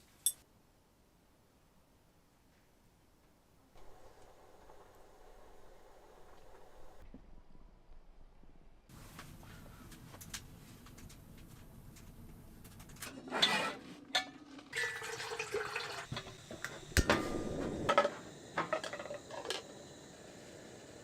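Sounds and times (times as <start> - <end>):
metal cookware clinking: 0.2 - 0.4.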